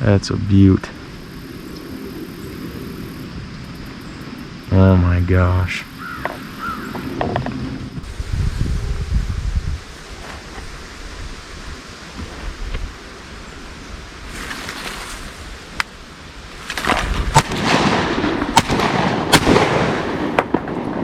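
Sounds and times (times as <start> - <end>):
shotgun firing: 16.8 - 21.0.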